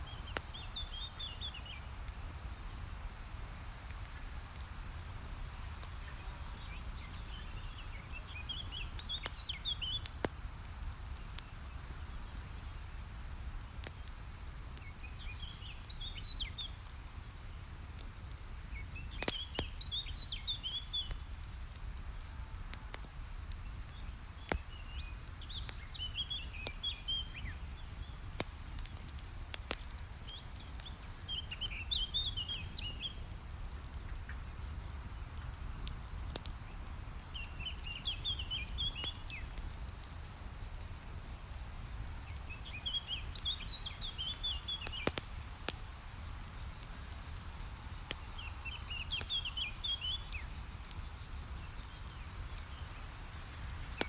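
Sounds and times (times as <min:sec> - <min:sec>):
campfire crackling and popping: 0:00.0 - 0:54.0
songbird twittering: 0:24.5 - 0:28.1, 0:30.2 - 0:33.2, 0:37.3 - 0:39.5, 0:42.5 - 0:45.2.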